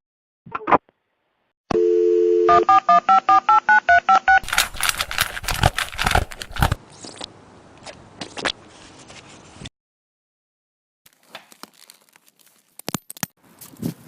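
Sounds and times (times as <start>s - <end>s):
loud crackling and crinkling: 4.4s - 6.8s, 11.1s - 13.1s.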